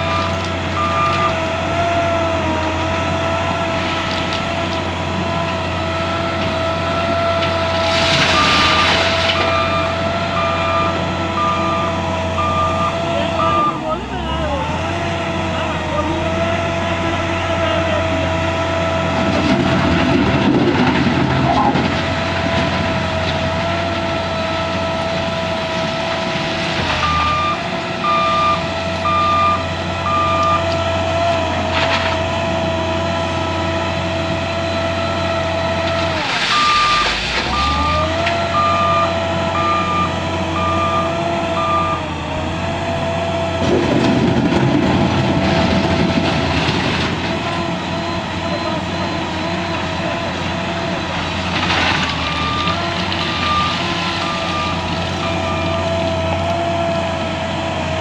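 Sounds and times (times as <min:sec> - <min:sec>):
reversing alarm beeps: 0:00.0 - 0:01.4, 0:07.9 - 0:14.6, 0:26.9 - 0:30.7, 0:36.0 - 0:42.1, 0:48.0 - 0:50.6, 0:52.2 - 0:56.0
diesel engine running under load: 0:00.0 - 0:58.0.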